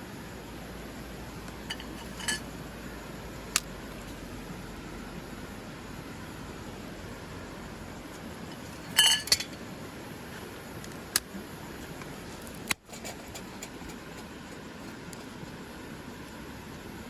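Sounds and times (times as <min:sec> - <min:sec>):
metal camp gear jangling: 0:01.7 - 0:02.5, 0:08.5 - 0:09.6, 0:12.8 - 0:14.6.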